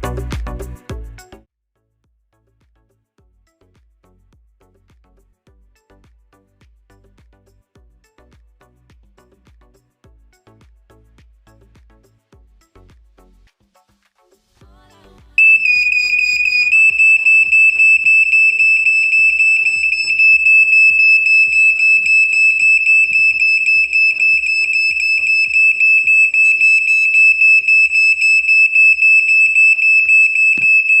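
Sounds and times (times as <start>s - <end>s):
smoke detector alarm tone: 15.4s - 31.0s.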